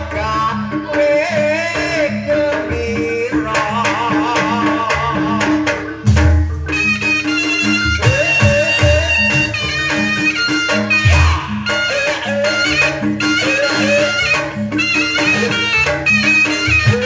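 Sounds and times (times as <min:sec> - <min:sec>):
hand drum strokes: 0:00.0 - 0:17.0
wavering melody: 0:05.7 - 0:17.0.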